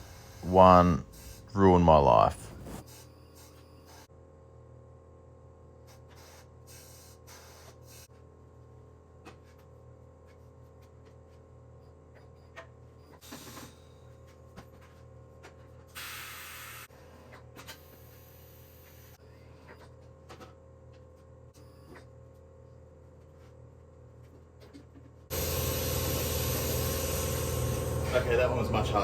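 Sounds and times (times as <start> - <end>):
steady low hum: 0.0 - 2.8
compressed air hissing: 25.3 - 28.2.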